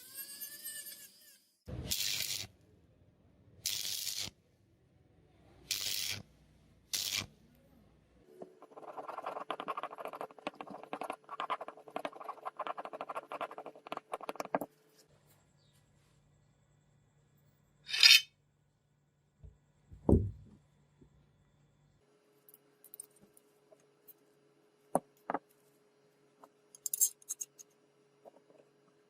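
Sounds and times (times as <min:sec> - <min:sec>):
hand scraping and rubbing: 0:08.4 - 0:15.1, 0:17.9 - 0:18.3.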